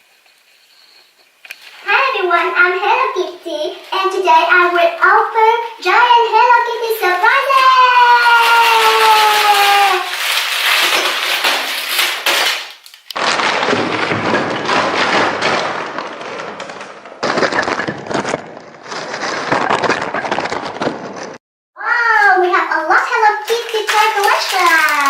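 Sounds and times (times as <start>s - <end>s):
packaging crinkling and tearing: 1.5s - 1.9s, 7.4s - 21.4s, 23.2s - 25.0s.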